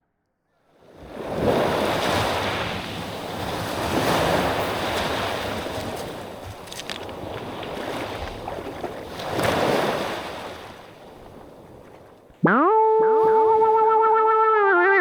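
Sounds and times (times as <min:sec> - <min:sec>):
waves washing onto a beach: 0:00.8 - 0:12.2.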